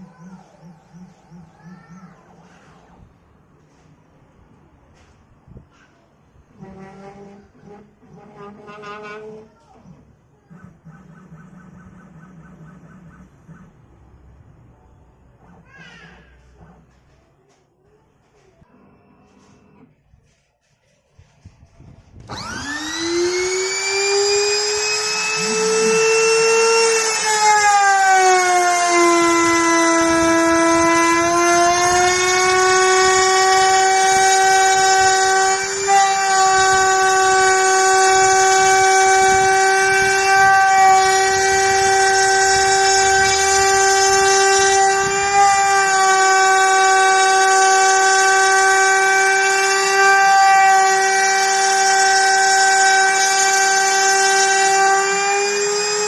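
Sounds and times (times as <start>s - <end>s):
router spindle whining: 6.5s - 13.9s, 22.1s - 56.0s.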